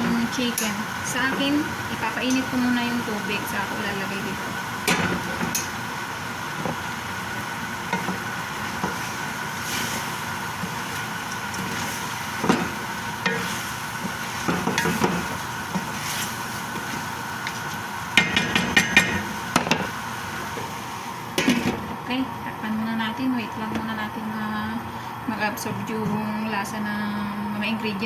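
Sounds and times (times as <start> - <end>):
food sizzling in a pan: 0.0 - 21.8
steady hum: 0.0 - 28.0
spoon stirring and knocking pan: 6.5 - 20.7, 21.4 - 21.8.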